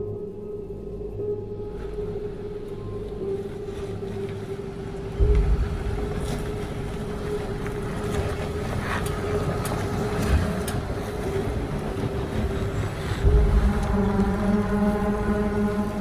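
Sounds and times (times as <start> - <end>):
vehicle engine rumbling: 1.6 - 16.0
wind noise on microphone: 3.7 - 16.0.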